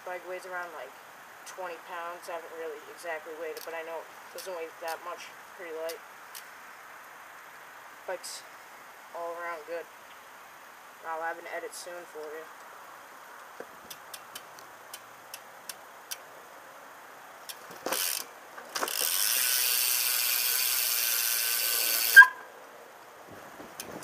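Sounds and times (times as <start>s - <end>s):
bike hub ratcheting clicks: 17.4s - 22.3s
freewheel buzz: 17.6s - 22.4s.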